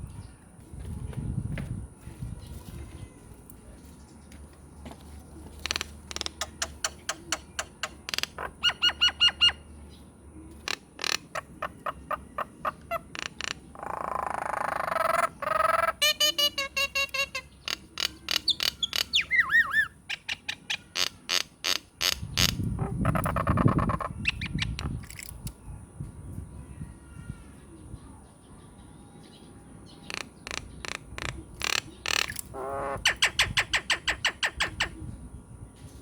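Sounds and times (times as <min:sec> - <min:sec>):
harsh raspy bird call: 0:10.6 - 0:24.6, 0:30.0 - 0:35.0.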